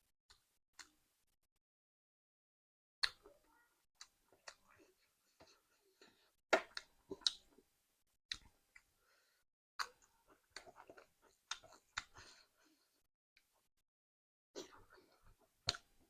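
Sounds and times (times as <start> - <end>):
person chewing food: 4.0 - 7.7, 9.8 - 13.5.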